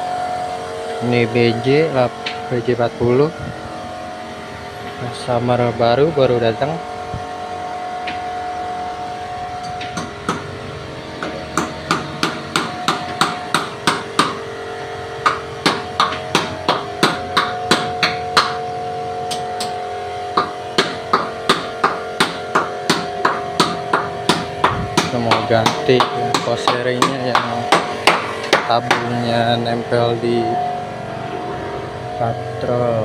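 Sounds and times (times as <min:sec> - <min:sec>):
steady hum: 0:00.0 - 0:33.0
hammer blows on metal: 0:15.2 - 0:30.8.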